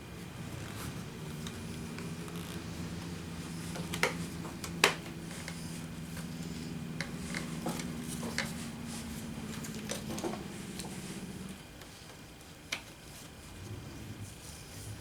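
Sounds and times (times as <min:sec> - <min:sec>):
steady low hum: 0:00.0 - 0:15.0
clicks and knocks of handling: 0:03.7 - 0:05.6.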